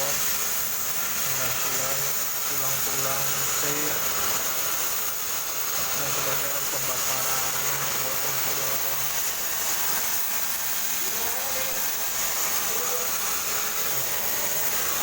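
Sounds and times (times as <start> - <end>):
welding arc frying hiss: 0.0 - 15.0.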